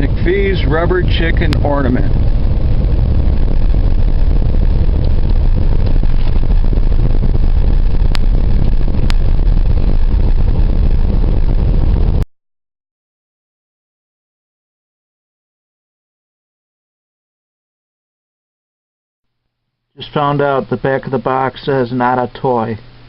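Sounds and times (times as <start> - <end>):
wind buffeting microphone: 0.0 - 12.2.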